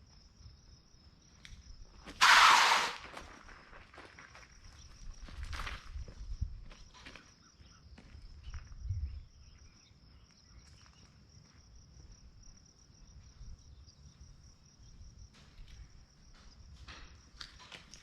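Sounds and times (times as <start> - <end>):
high-pitched insect trill: 0.0 - 16.8
bump: 2.1 - 3.2.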